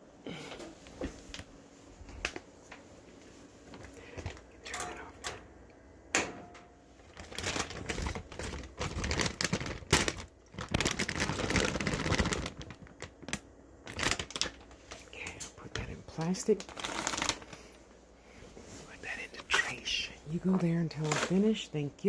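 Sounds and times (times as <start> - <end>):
plastic bags clicking and knocking: 3.7 - 5.4, 6.2 - 17.8, 21.0 - 21.6
plastic clattering and crinkling: 3.7 - 5.5, 6.1 - 17.8, 21.0 - 21.6.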